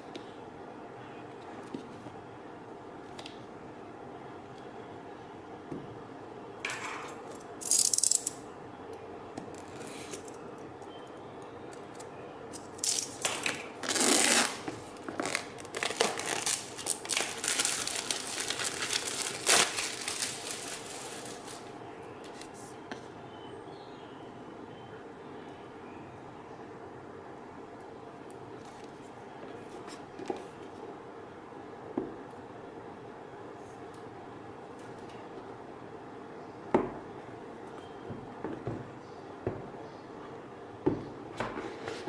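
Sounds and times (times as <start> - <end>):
packaging rustling and tearing: 12.8 - 21.7.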